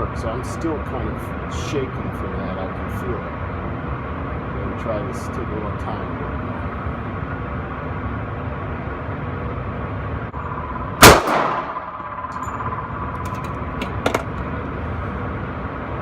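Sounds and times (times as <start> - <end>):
steady background hum: 0.0 - 16.0
pistol shot with echo: 10.6 - 12.9.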